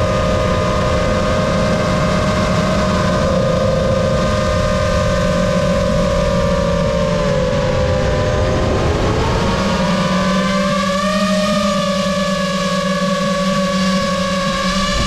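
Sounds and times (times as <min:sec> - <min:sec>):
drone motors whining: 0:00.0 - 0:15.0.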